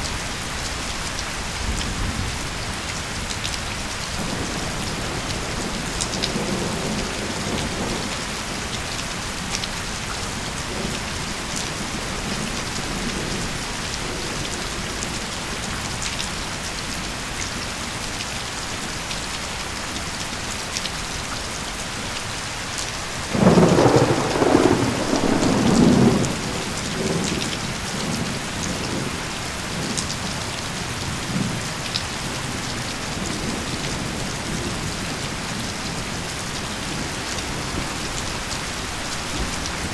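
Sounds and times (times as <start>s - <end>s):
steady rain falling: 0.0s - 39.9s
thunder rumbling: 23.3s - 30.0s.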